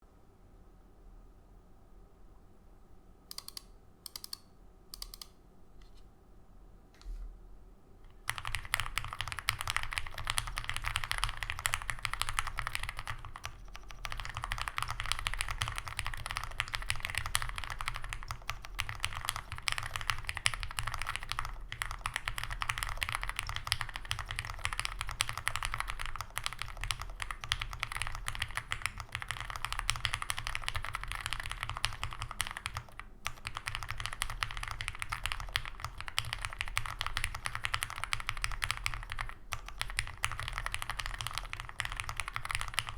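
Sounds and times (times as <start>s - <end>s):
fast mechanical keyboard typing: 8.1s - 42.9s.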